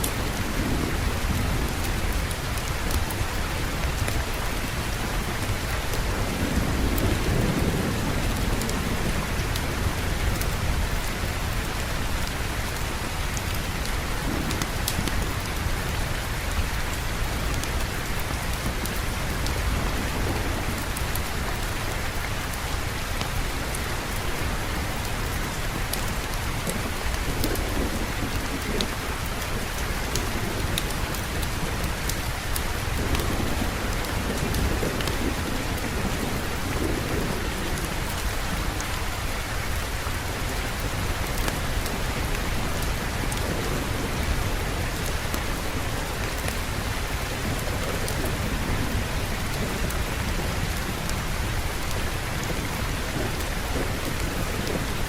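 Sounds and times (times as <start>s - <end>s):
soft thunder rumbling: 0.0s - 55.0s
steady rain: 0.0s - 55.0s.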